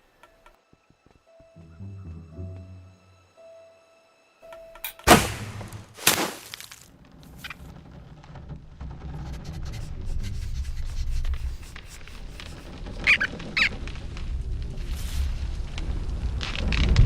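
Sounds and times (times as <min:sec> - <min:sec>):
loud crashing impacts: 0:05.1 - 0:06.9
low rumble: 0:13.8 - 0:17.0.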